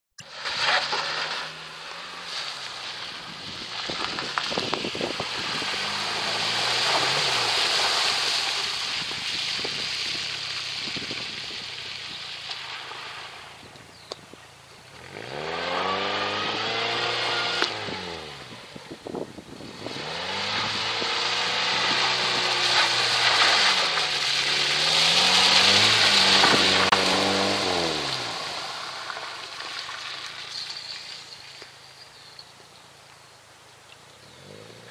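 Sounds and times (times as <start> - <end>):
car engine revving: 0.3 - 9.1, 14.8 - 29.7.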